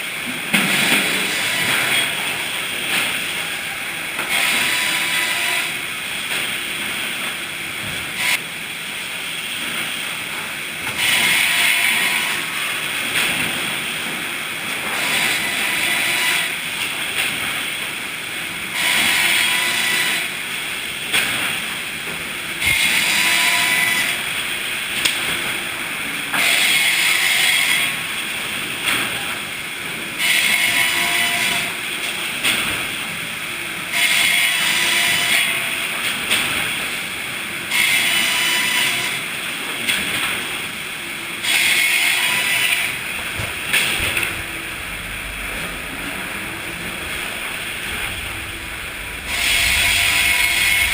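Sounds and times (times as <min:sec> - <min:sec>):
mill machinery running: 0:00.0 - 0:50.9
sawmill saw cutting wood: 0:00.7 - 0:05.8, 0:08.1 - 0:08.4, 0:10.9 - 0:12.6, 0:14.8 - 0:16.6, 0:18.7 - 0:20.4, 0:22.6 - 0:24.2, 0:26.3 - 0:28.0, 0:30.2 - 0:31.8, 0:33.9 - 0:35.7, 0:37.7 - 0:39.2, 0:41.4 - 0:45.2, 0:45.8 - 0:50.9.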